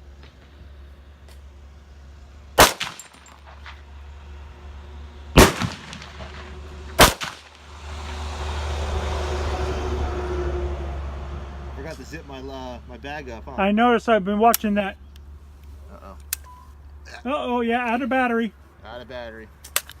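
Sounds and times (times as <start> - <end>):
steady rumbling noise: 0.0 - 8.5
rifle shots with echoes: 2.6 - 3.7, 5.4 - 7.6.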